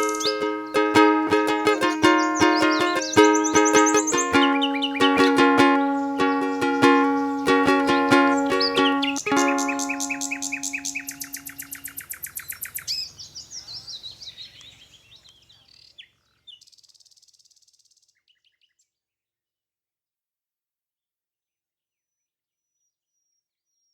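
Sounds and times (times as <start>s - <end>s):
ukulele chord ringing: 0.0s - 11.9s
bird chirping and trilling: 0.0s - 14.9s.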